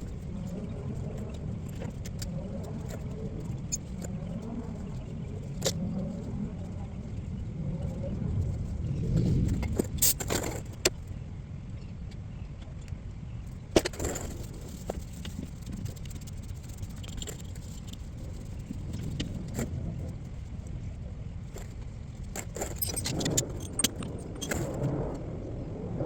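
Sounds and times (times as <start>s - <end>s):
low background rumble: 0.0s - 26.0s
metal hand tools clinking: 22.4s - 24.8s.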